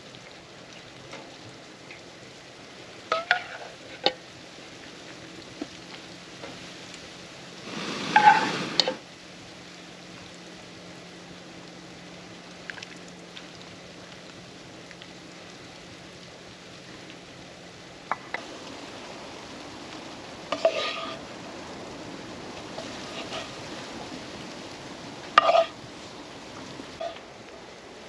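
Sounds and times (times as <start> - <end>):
food sizzling in a pan: 2.8 - 5.7, 7.5 - 9.2, 18.0 - 27.6
utensil scraping in a pan: 3.1 - 4.1, 7.7 - 9.0, 20.5 - 21.2, 22.7 - 23.6, 25.3 - 25.8, 27.0 - 27.2.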